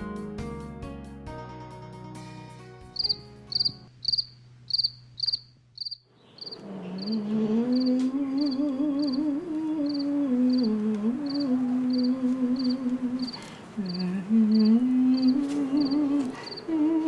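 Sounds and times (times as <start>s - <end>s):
crickets chirping: 3.0s - 17.0s
wavering lullaby hum: 6.4s - 17.0s.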